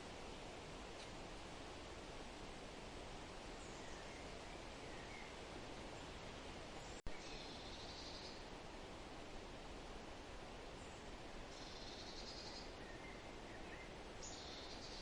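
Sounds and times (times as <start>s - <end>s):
faint rustling hiss: 0.0s - 15.0s
distant bird chirps: 6.8s - 8.5s, 10.8s - 15.0s.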